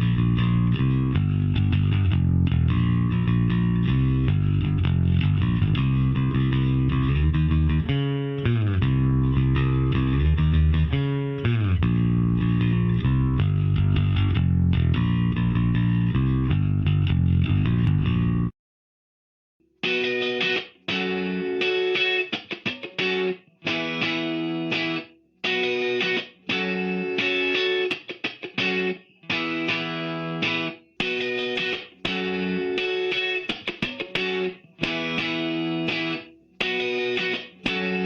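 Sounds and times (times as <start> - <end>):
electric guitar chord riff: 19.8 - 38.0.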